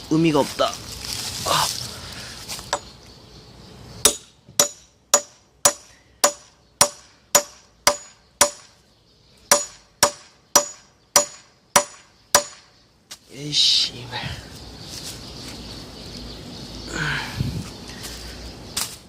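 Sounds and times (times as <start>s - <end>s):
hatchet striking a log: 4.0s - 8.8s, 9.5s - 12.7s.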